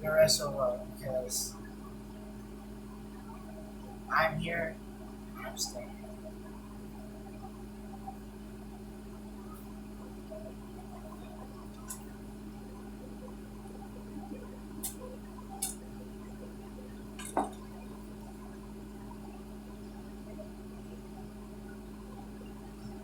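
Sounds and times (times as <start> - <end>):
low electrical hum: 0.0 - 23.0
kitchenware clinking: 17.2 - 17.7.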